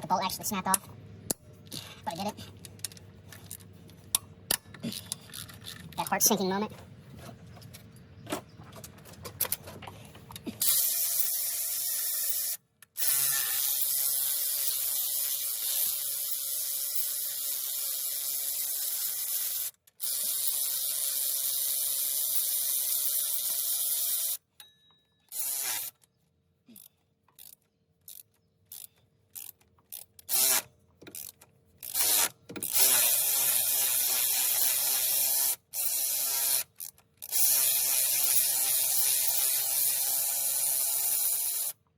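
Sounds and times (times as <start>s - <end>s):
power ratchet spinning bolts: 10.6s - 24.4s, 25.3s - 25.9s, 27.4s - 41.8s.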